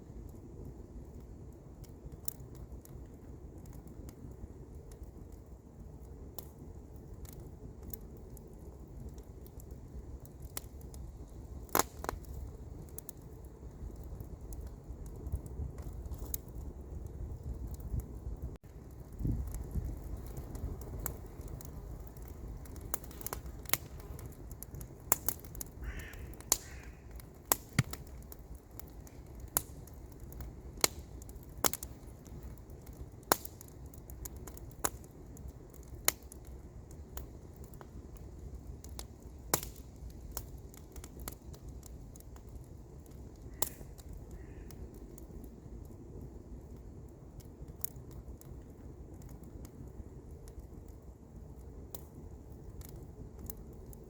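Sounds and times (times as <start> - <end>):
campfire crackling and popping: 0.0 - 54.0
bird calling: 25.8 - 27.1.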